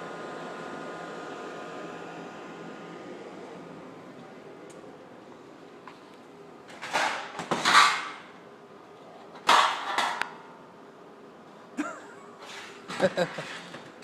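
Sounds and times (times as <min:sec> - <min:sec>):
sheet metal clattering and banging: 0:09.4 - 0:10.2.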